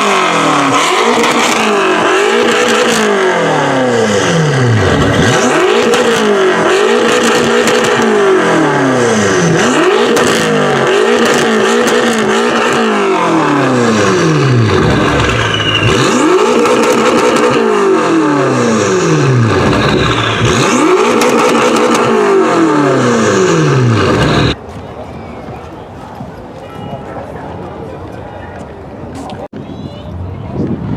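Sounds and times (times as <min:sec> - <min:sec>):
car engine revving hard: 0:00.0 - 0:24.6.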